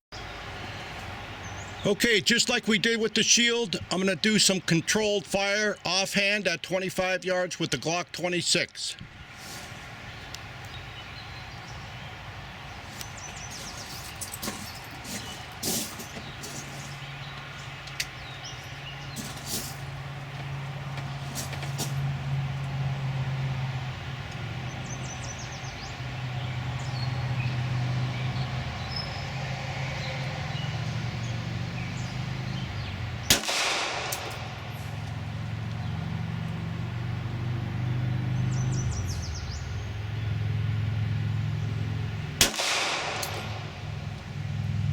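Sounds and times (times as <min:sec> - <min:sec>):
pistol shots: 0:33.2 - 0:35.0, 0:42.4 - 0:44.1
low steady rumble: 0:38.0 - 0:44.9.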